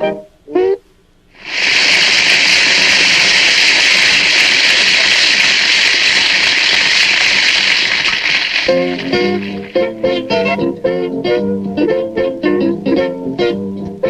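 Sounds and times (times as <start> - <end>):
loud steady hiss: 0.8 - 11.0.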